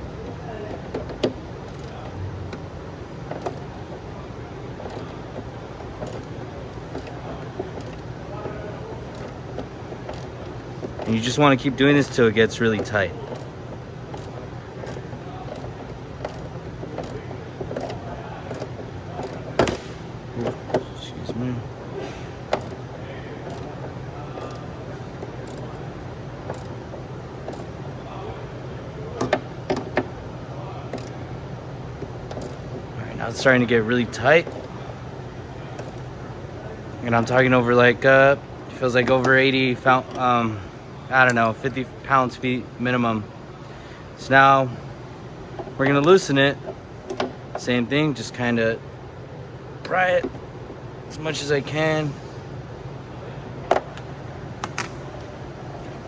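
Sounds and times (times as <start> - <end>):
steady low hum: 0.0 - 56.0
wrench metal clicks: 0.2 - 4.0, 4.8 - 8.1, 9.1 - 19.8, 22.5 - 23.8, 24.4 - 25.8, 26.5 - 27.8, 30.9 - 31.2, 32.3 - 32.6
light metal clicks of wrench: 25.4 - 25.8, 26.5 - 26.7.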